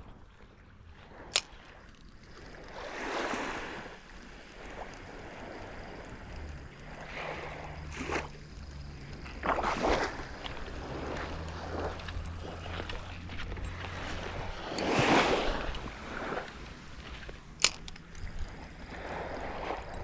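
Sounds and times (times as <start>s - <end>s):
small waves washing: 0.1s - 20.0s
sharp click: 1.3s - 1.6s, 16.4s - 18.5s.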